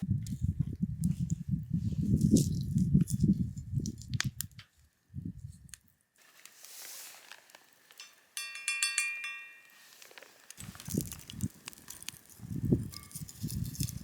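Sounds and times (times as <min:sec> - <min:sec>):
soft hiss: 0:06.2 - 0:14.0
metal utensil clinking on cookware: 0:07.9 - 0:11.2, 0:11.8 - 0:14.0.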